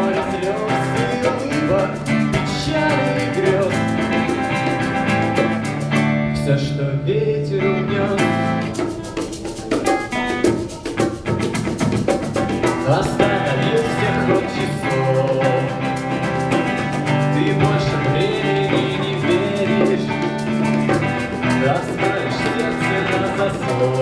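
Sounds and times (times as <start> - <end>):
drum kit beat: 0.0 - 6.2, 8.0 - 24.0
band playing a song: 0.0 - 6.5, 7.6 - 24.0
guitar: 0.0 - 24.0.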